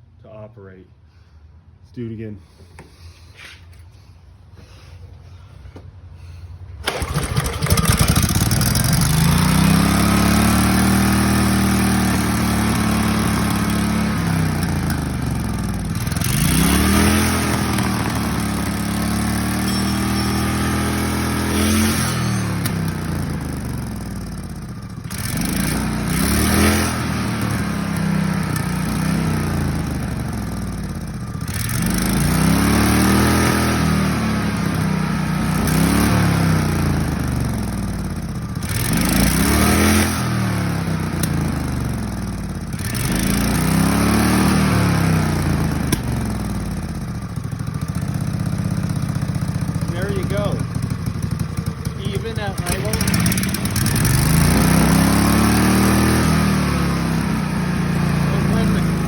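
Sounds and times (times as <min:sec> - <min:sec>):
small engine running: 0:06.8 - 0:59.0.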